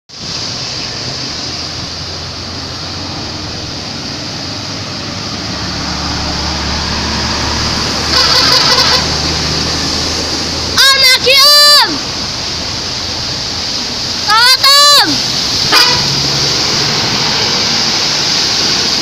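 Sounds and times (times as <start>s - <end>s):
traffic rumble and hiss: 0.1s - 19.0s
musical bus horn: 8.0s - 9.4s, 15.7s - 16.3s.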